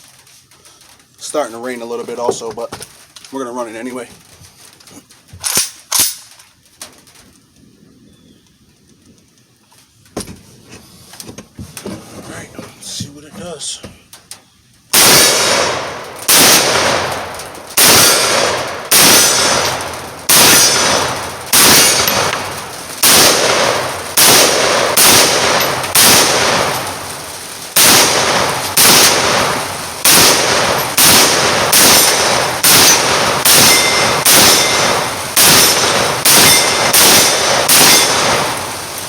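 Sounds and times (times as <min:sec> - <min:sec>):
pistol gunshots with echo: 0:14.9 - 0:38.9.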